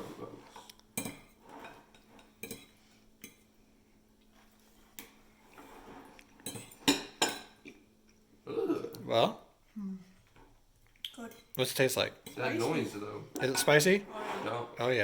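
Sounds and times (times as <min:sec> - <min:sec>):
cutlery clinking on plates: 0:00.9 - 0:03.5, 0:06.3 - 0:07.8.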